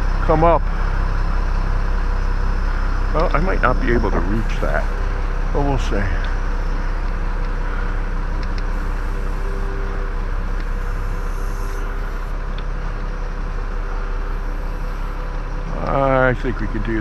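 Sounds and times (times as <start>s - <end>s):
mechanical drone: 0.0s - 17.0s
faint clicks: 8.4s - 8.7s.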